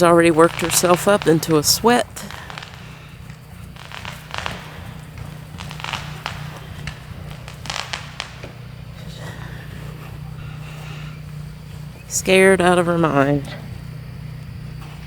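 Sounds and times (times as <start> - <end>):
distant firecrackers popping: 0.0 - 15.0
steady low hum: 0.0 - 15.0.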